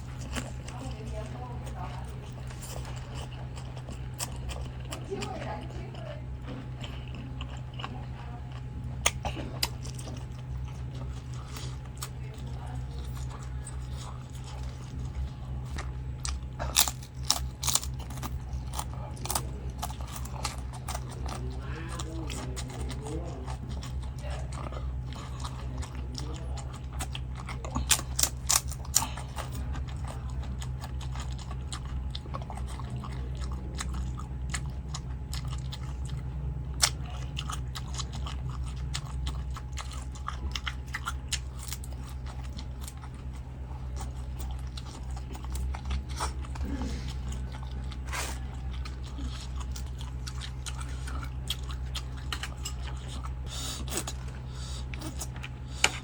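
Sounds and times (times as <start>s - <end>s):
person chewing and crunching food: 0.0s - 56.0s
steady low hum: 0.0s - 56.0s.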